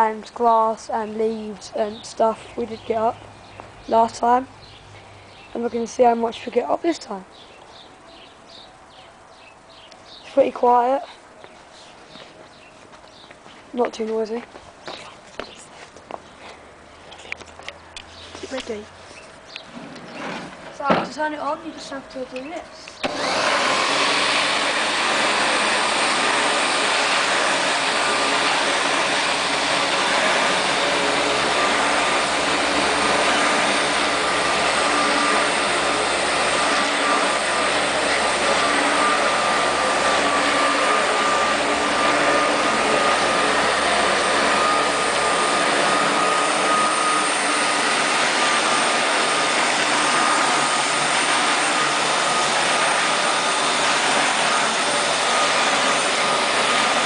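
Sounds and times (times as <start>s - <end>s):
electric hover mower running: 19.7s - 57.0s.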